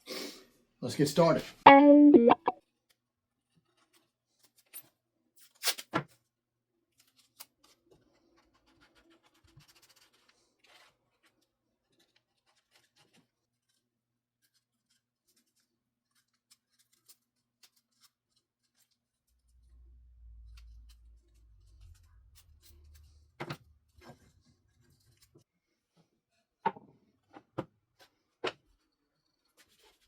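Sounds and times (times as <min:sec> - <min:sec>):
light clicks and scratches: 0:03.4 - 0:04.9, 0:06.9 - 0:25.5, 0:28.0 - 0:30.0.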